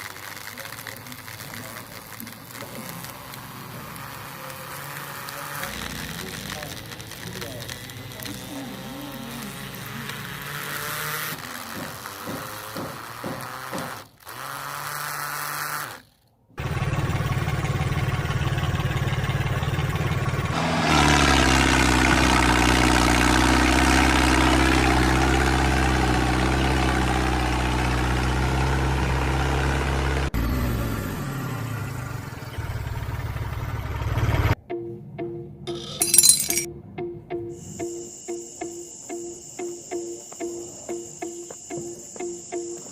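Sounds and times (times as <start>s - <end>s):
small motor whirring: 0.0s - 16.3s.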